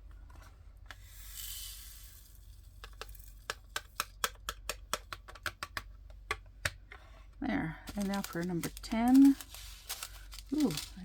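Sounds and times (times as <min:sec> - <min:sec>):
resin drills pouring hiss: 0:01.0 - 0:02.4.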